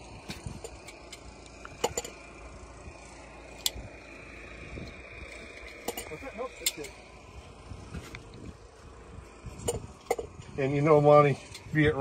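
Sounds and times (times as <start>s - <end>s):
steady low hum: 0.0s - 12.0s
parts clicking and knocking: 0.1s - 2.5s, 3.5s - 4.0s, 4.8s - 7.0s, 9.5s - 10.6s.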